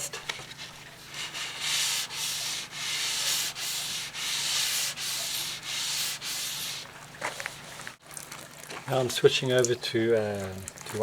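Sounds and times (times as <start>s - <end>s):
sandpaper sanding strokes: 0.5s - 7.8s.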